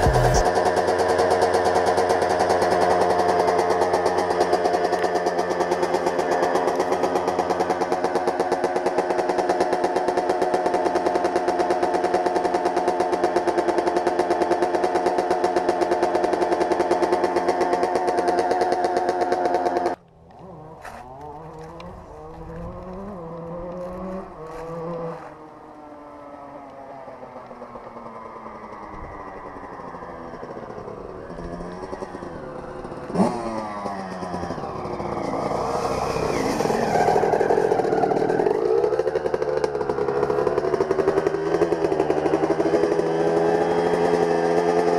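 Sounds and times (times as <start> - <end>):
motocross engine idling: 0.0 - 24.8, 37.3 - 44.9
engine revving: 0.0 - 25.5, 27.9 - 44.9.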